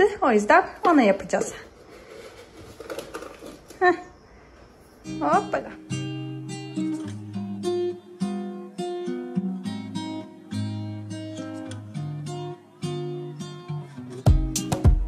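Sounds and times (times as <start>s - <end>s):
acoustic guitar melody: 5.0s - 15.0s.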